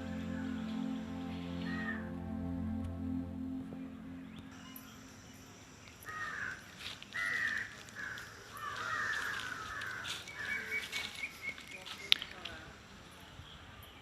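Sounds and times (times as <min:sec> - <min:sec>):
crow cawing: 0:06.1 - 0:06.6, 0:07.2 - 0:10.2.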